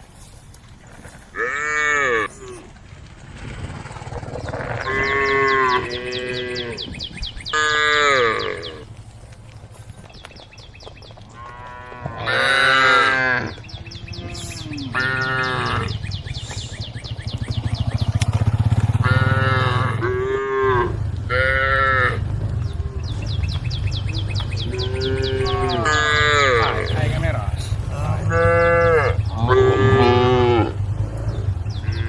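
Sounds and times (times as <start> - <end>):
cows mooing: 1.3 - 2.7, 3.6 - 8.9, 11.3 - 16.6, 18.3 - 32.0.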